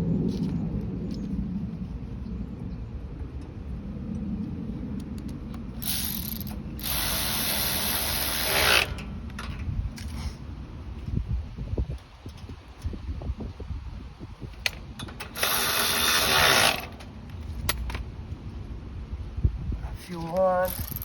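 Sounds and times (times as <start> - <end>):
ratchet wrench clicking: 5.8 - 9.5, 15.0 - 17.0, 20.6 - 21.0.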